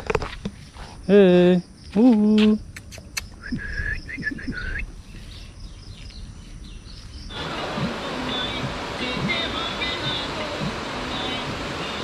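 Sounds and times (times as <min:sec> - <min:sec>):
birds chirping: 0:00.5 - 0:12.0
loud steady rushing noise: 0:07.3 - 0:12.0.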